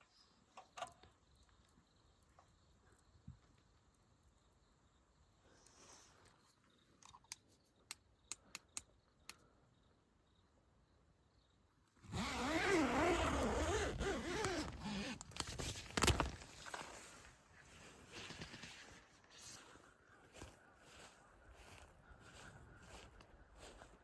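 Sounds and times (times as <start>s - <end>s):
zipper being pulled: 12.1s - 16.4s.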